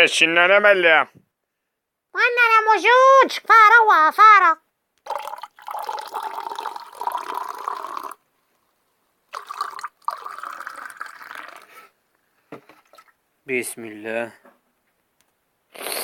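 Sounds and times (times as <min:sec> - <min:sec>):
water running: 0:05.1 - 0:08.2, 0:09.3 - 0:11.9, 0:12.6 - 0:13.2.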